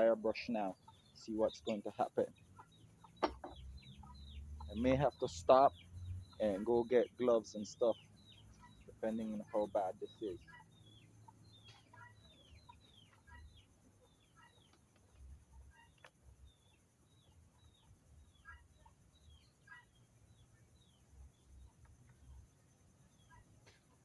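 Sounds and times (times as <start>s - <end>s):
chicken clucking: 0.0s - 2.3s, 8.7s - 10.7s
faint chicken chirps: 7.9s - 14.8s, 17.5s - 20.0s.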